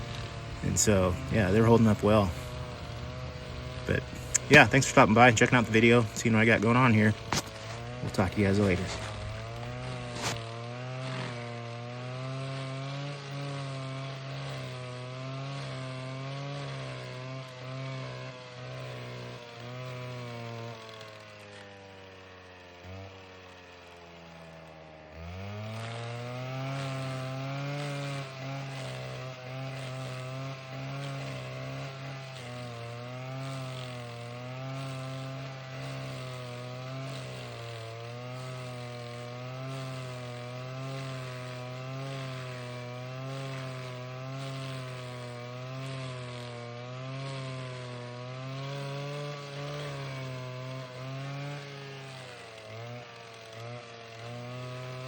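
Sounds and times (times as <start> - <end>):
cutter wheel grinding stump: 0.0 - 55.0
stump grinder engine revving: 0.0 - 55.0.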